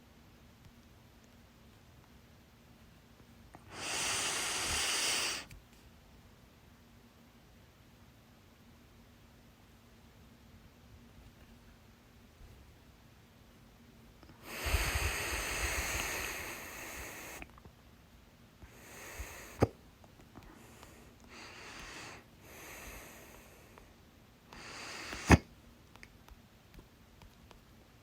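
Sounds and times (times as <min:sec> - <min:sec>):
woman breathing: 0:03.6 - 0:05.5, 0:14.3 - 0:17.5, 0:18.6 - 0:19.8, 0:20.4 - 0:25.5.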